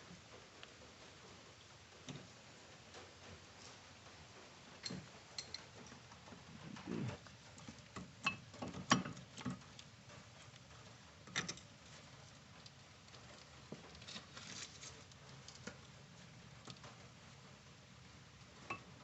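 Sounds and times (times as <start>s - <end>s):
metal tools clicking and knocking: 4.8s - 6.0s.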